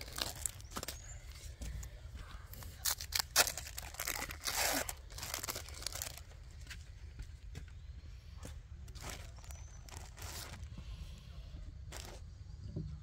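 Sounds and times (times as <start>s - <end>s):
packaging crinkling and tearing: 0.0s - 1.0s, 2.7s - 6.4s, 8.9s - 10.7s, 11.9s - 12.2s.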